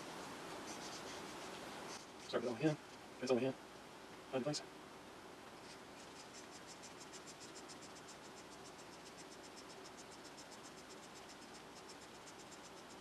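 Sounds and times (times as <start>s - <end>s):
faint steady hum: 0.0s - 13.0s
cricket chirping: 6.2s - 13.0s.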